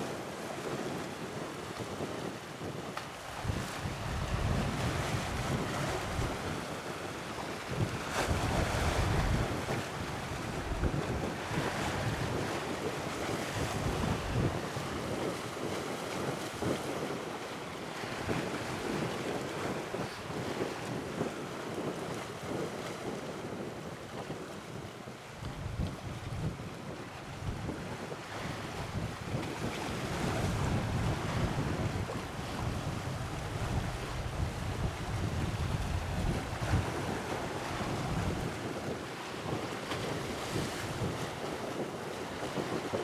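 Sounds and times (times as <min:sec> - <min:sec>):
wind buffeting microphone: 0:00.2 - 0:43.0.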